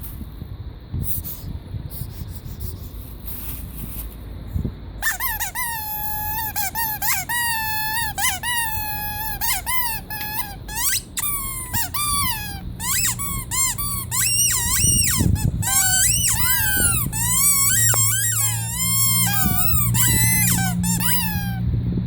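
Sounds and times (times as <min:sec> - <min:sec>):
squeaky rubber toy squeaking: 0:05.0 - 0:21.6.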